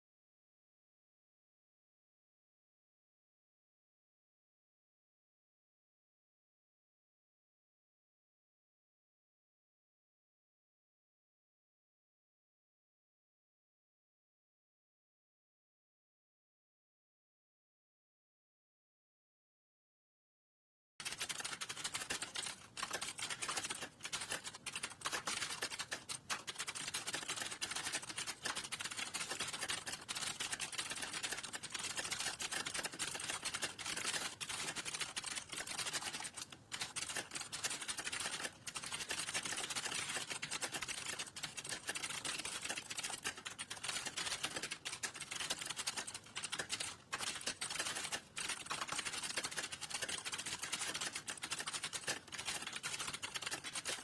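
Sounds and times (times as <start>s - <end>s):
fast keyboard typing: 21.0s - 54.0s.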